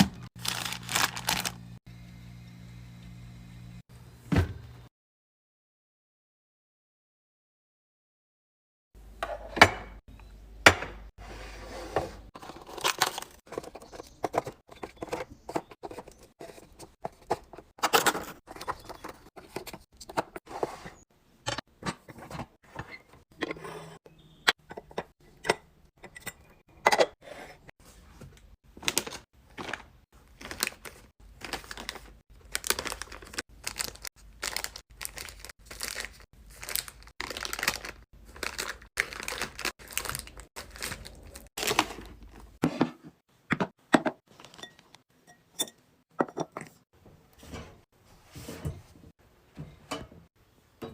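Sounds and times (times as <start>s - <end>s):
plastic packaging crinkling: 0.0s - 1.7s, 28.8s - 42.5s.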